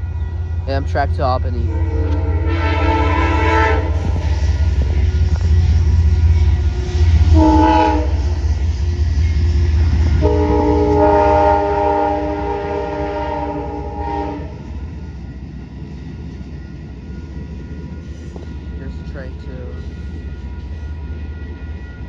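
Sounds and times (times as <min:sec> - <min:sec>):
train rumbling past: 0:00.0 - 0:22.0
train horn blasts: 0:01.6 - 0:15.0.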